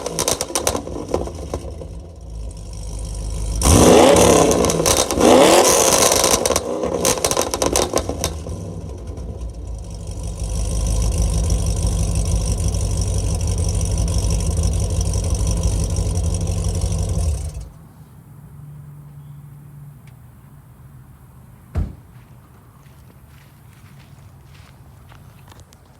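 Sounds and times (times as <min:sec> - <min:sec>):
exhaust pops and crackles: 0:00.0 - 0:17.7
car engine idling: 0:00.0 - 0:25.5.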